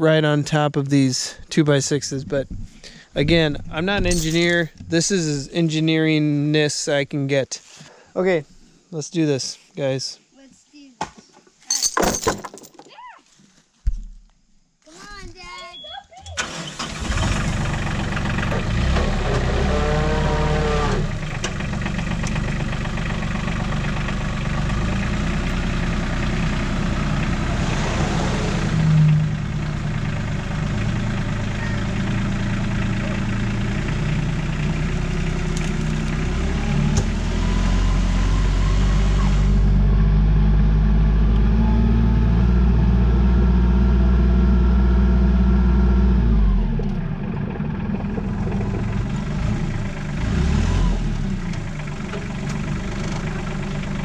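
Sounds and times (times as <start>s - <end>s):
loader engine revving under load: 16.4s - 54.0s.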